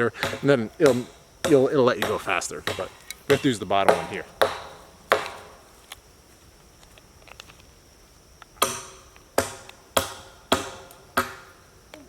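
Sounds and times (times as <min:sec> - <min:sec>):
hammer blows on metal: 0:00.0 - 0:05.6, 0:08.6 - 0:11.6.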